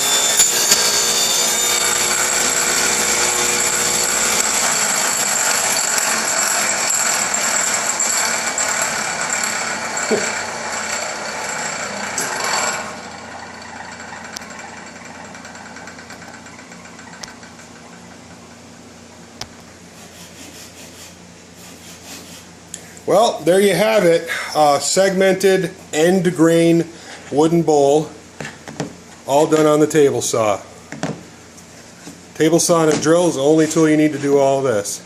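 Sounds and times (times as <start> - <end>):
power tool whining: 0.0 - 18.1.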